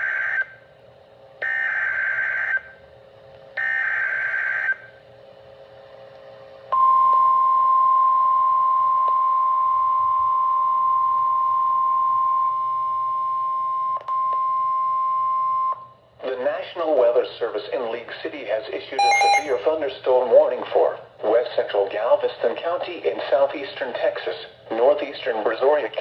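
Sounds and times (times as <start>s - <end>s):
data burst tones: 19.0s - 19.6s
steady attention tone: 19.0s - 19.6s.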